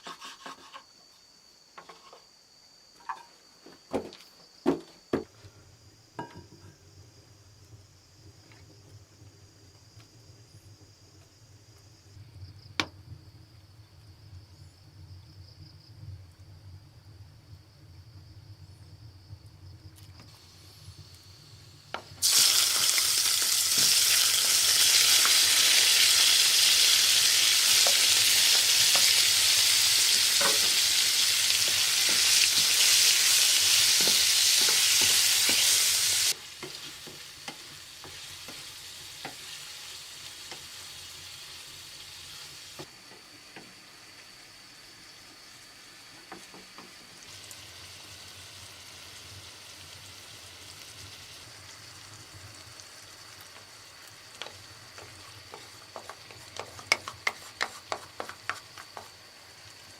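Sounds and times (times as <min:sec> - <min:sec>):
food sizzling in hot oil: 0:20.3 - 0:59.9.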